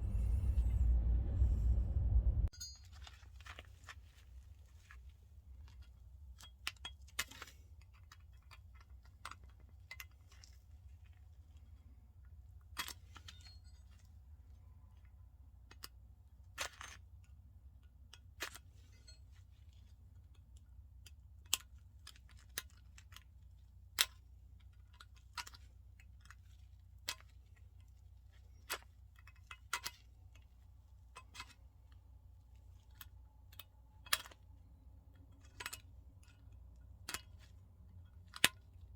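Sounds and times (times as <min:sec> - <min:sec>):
low steady hum: 0:00.0 - 0:06.4
light clicks and knocks of tools: 0:14.9 - 0:38.9.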